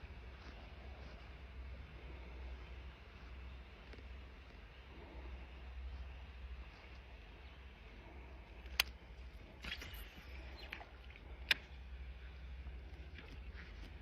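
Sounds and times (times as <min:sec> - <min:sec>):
low steady rumble: 0:00.0 - 0:14.0
sharp clicks: 0:08.6 - 0:09.0
soft clicks: 0:08.6 - 0:09.0.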